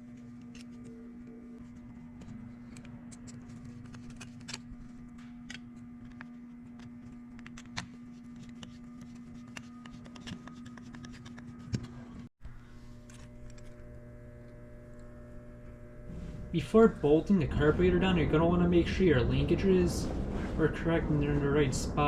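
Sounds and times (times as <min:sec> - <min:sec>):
steady electrical hum: 0:00.0 - 0:22.0.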